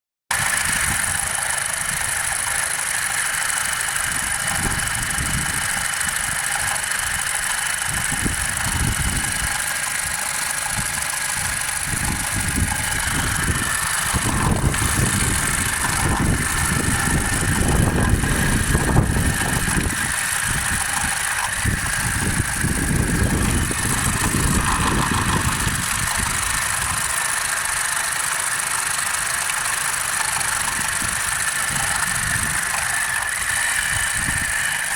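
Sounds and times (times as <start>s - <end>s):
car engine running with a knock: 0.3s - 34.9s.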